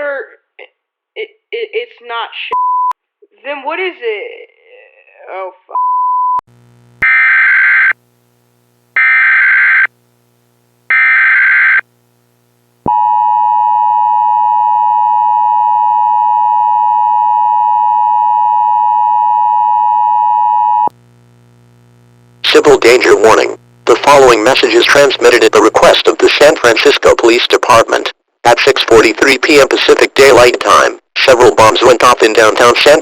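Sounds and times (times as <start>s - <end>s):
digital data bursts screeching: 7.0s - 8.0s, 9.0s - 9.9s, 10.9s - 11.8s.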